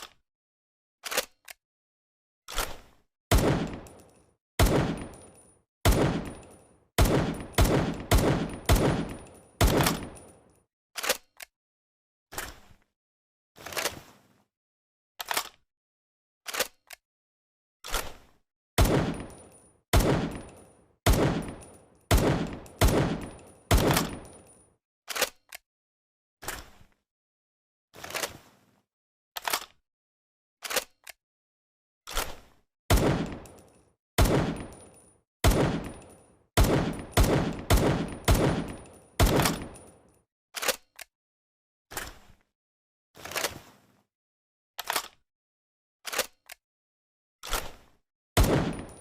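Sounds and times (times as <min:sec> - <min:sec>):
small clicks: 0:01.0 - 0:01.6, 0:11.0 - 0:11.6, 0:15.2 - 0:15.7, 0:16.5 - 0:17.0, 0:23.9 - 0:25.6, 0:29.4 - 0:29.8, 0:30.6 - 0:31.2, 0:40.6 - 0:41.1, 0:44.8 - 0:45.2, 0:46.0 - 0:46.6
imitation pistol shots: 0:03.3 - 0:03.9, 0:04.6 - 0:05.2, 0:05.9 - 0:06.4, 0:07.0 - 0:10.2, 0:18.8 - 0:19.4, 0:20.0 - 0:20.5, 0:21.1 - 0:24.3, 0:32.9 - 0:33.5, 0:34.2 - 0:34.8, 0:35.4 - 0:36.0, 0:36.6 - 0:39.8, 0:48.4 - 0:49.0.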